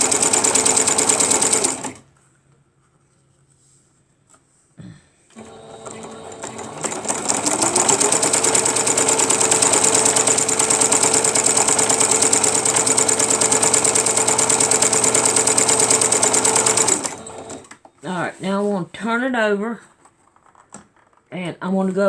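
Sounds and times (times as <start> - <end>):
sewing machine stitching: 0.0 - 2.1, 5.3 - 17.8.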